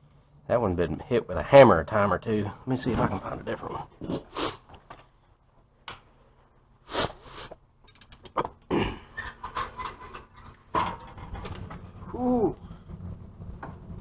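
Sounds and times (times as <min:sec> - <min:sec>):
tools clattering: 0:07.8 - 0:08.4, 0:09.2 - 0:11.9.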